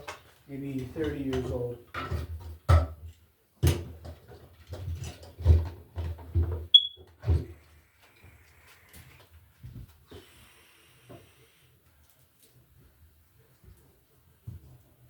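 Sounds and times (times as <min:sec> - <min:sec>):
cable handling knocks and rustles: 0:00.0 - 0:07.6
short high beep: 0:06.8 - 0:07.0.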